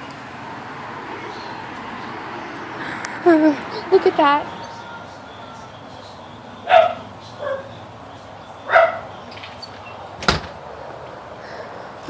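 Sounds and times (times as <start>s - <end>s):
dog barking: 6.7s - 7.8s, 8.7s - 9.1s.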